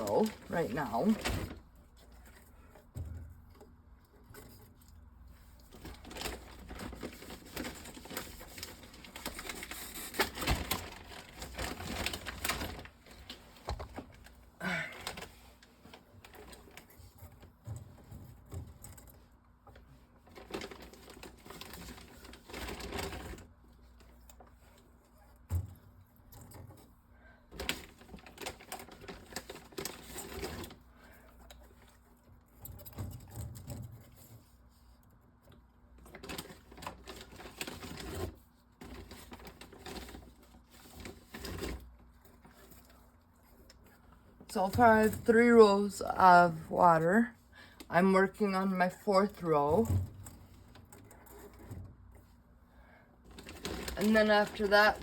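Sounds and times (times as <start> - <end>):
plastic bottles clattering: 53.3 - 55.0.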